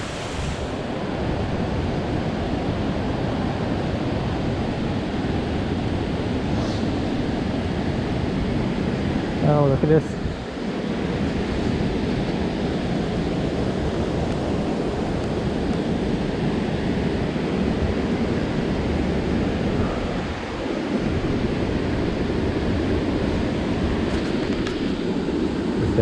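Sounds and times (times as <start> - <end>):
waterfall rushing: 0.0 - 1.8.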